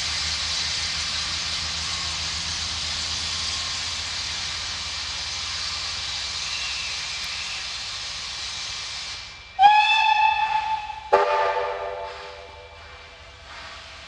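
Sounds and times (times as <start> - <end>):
steam hissing: 0.0 - 14.0
lower chord steam whistle: 9.6 - 12.8
steam whistle single note: 9.6 - 12.8.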